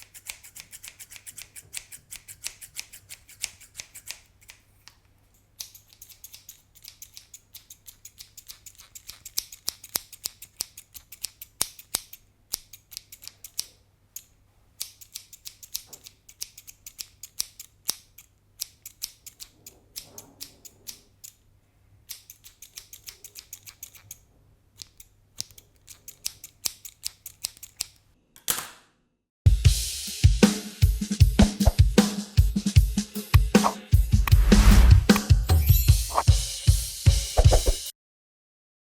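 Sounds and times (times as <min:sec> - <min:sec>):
scissors snipping: 0:00.0 - 0:05.0, 0:05.6 - 0:21.4, 0:22.1 - 0:24.2, 0:24.8 - 0:28.0, 0:37.4 - 0:37.8.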